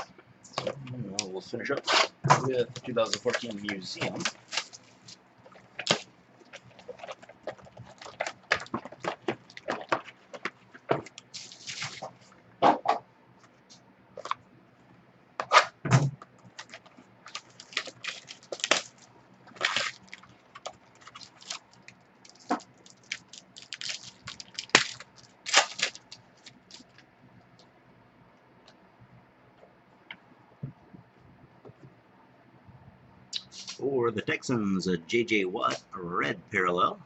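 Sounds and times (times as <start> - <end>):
plastic and foil packs crackling: 1.2 - 12.4, 16.4 - 27.0.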